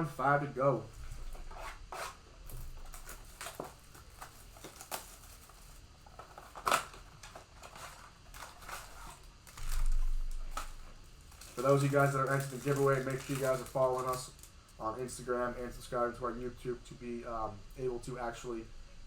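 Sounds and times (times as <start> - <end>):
foil packs crinkling: 1.0 - 15.8
packaging tearing: 1.2 - 14.6.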